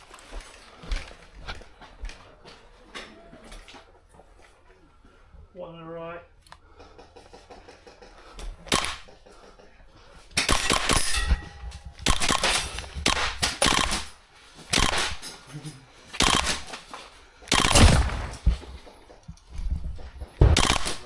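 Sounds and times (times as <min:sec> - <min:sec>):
airsoft guns firing rapid bursts: 0:08.7 - 0:09.6, 0:10.4 - 0:11.3, 0:12.0 - 0:15.3, 0:16.1 - 0:16.8, 0:17.5 - 0:18.9, 0:20.4 - 0:21.0.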